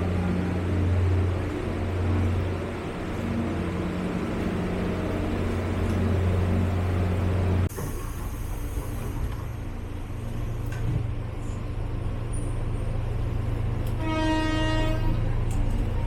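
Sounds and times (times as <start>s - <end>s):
train rumbling: 0.0s - 16.0s
train horn blast: 13.9s - 15.3s.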